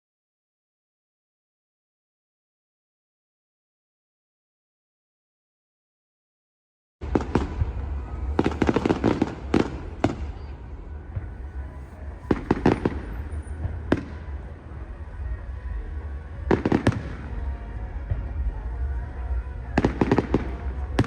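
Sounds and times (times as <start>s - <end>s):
fireworks bangs and crackles: 7.0s - 21.0s
steady low rumble: 7.0s - 21.0s.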